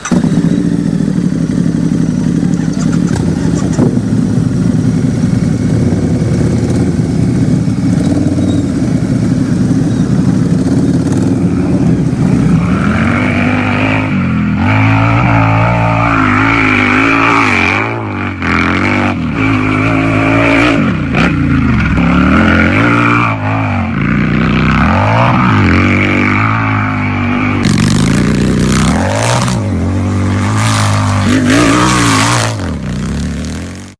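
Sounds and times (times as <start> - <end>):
motorcycle engine idling: 0.0 - 12.7
motorcycle engine revving: 0.0 - 33.9.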